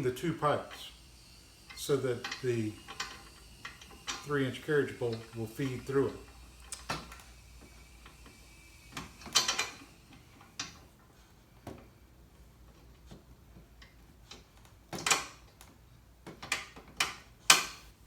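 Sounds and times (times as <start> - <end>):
bolt scraping metal tubes: 0.6 - 7.2.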